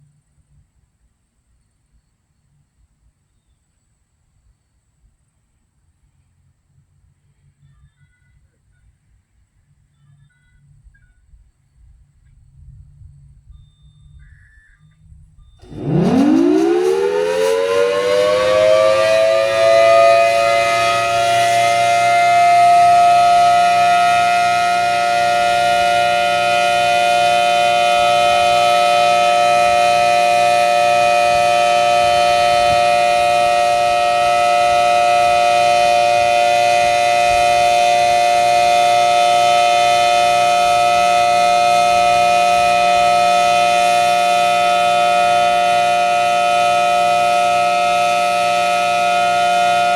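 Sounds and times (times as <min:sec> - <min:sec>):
outdoor warning siren: 0:15.6 - 0:49.9.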